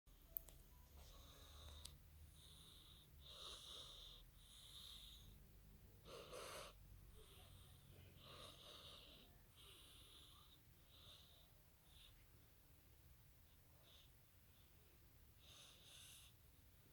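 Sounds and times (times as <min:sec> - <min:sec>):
cat snoring: 0:01.1 - 0:12.2, 0:15.4 - 0:16.4.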